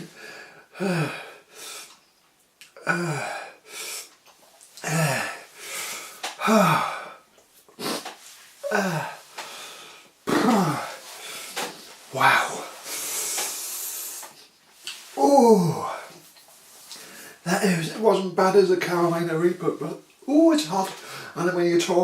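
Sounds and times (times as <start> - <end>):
man moaning in pain: 0.8 - 1.3, 2.8 - 3.6, 4.8 - 5.5, 6.4 - 7.2, 8.6 - 9.3, 10.4 - 11.0, 12.1 - 12.7, 15.2 - 16.1.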